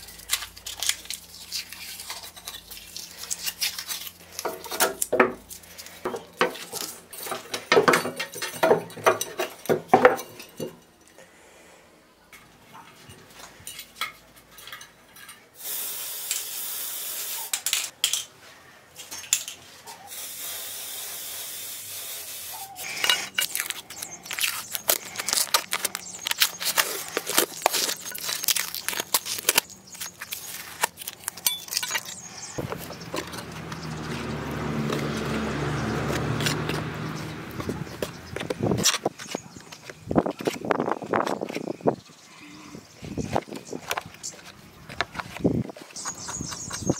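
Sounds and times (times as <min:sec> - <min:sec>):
parts clicking and knocking: 0:00.0 - 0:10.9, 0:22.8 - 0:41.7
aerosol spray paint hissing: 0:15.6 - 0:17.6, 0:20.1 - 0:22.9.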